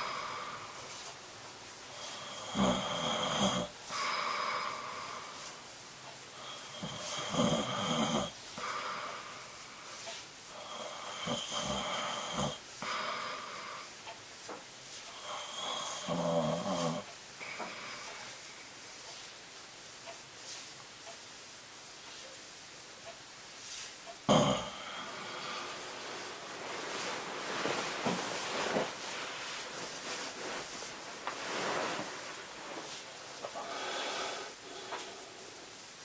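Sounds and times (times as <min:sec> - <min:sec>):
soft breaths: 0:00.0 - 0:36.0
man snoring: 0:02.0 - 0:04.8, 0:06.4 - 0:09.1, 0:10.6 - 0:13.8, 0:15.2 - 0:17.1, 0:24.3 - 0:25.8, 0:33.5 - 0:35.1.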